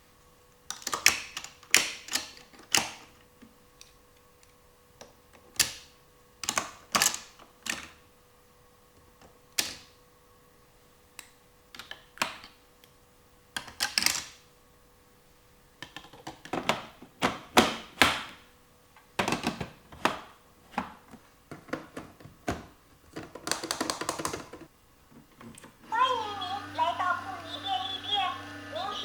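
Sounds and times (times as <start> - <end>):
plastic toy pieces clicking: 0.7 - 3.1, 13.6 - 14.4, 23.3 - 24.6.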